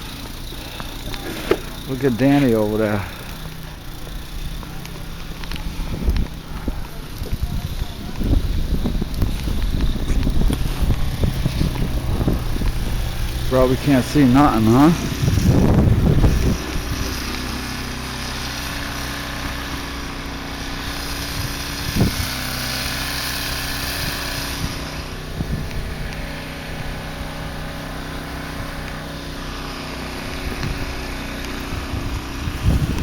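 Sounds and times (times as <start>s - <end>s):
snowblower engine running: 0.0s - 33.0s.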